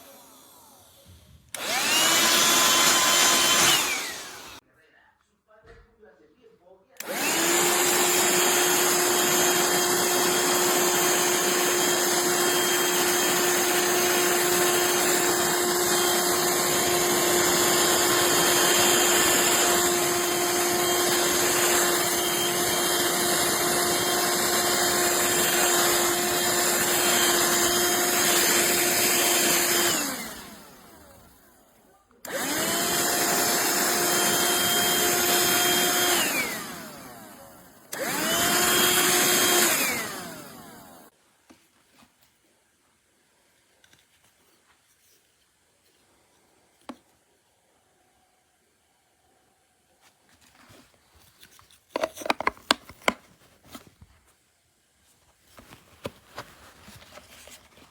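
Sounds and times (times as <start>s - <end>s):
handheld vacuum motor whining: 0.0s - 4.6s, 7.0s - 41.1s, 52.0s - 53.9s.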